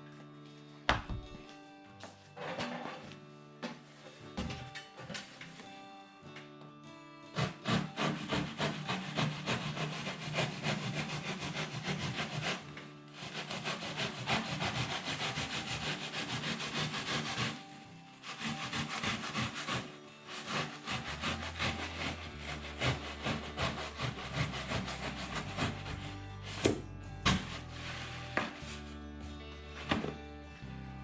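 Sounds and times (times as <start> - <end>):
saw cutting through wood: 7.3 - 30.2.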